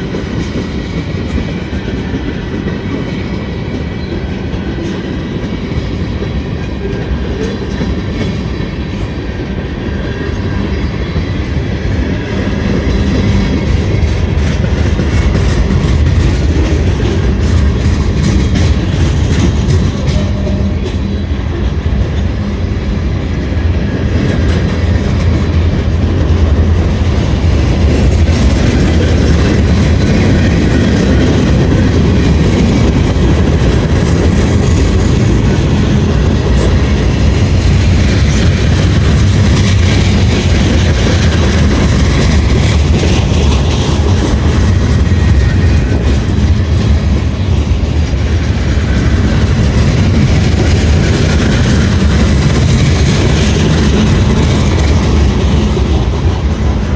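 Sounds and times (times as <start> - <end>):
freight train wheels clattering: 0.0 - 56.9.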